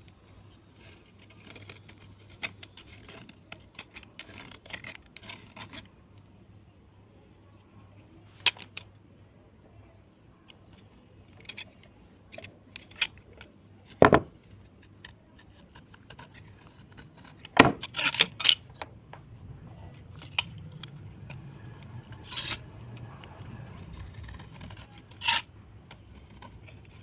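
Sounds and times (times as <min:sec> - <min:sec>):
slate pieces clicking and scratching: 0:00.8 - 0:05.9, 0:10.6 - 0:19.2, 0:19.9 - 0:27.0
sharp knocks of slate: 0:14.0 - 0:14.3, 0:17.6 - 0:17.9.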